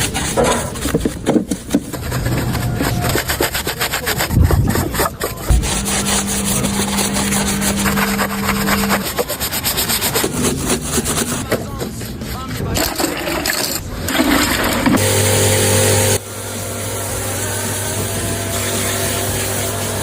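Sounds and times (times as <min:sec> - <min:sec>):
power tool humming: 0:05.5 - 0:09.0, 0:14.2 - 0:20.0.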